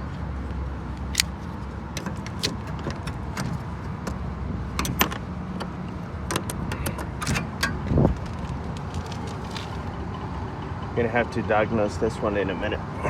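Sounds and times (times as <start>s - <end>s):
sharp metallic clicks and taps: 1.0s - 7.9s.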